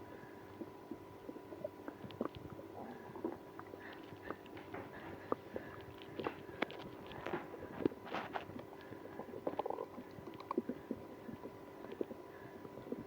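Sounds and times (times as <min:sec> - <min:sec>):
stomach gurgling: 0:00.0 - 0:13.0.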